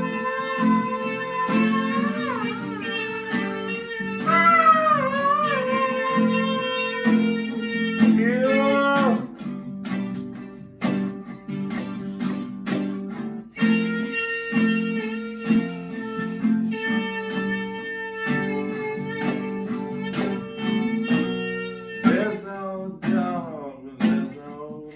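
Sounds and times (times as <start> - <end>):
held melody line bending in pitch: 0.0 - 8.6
acoustic guitar strumming: 0.0 - 24.9.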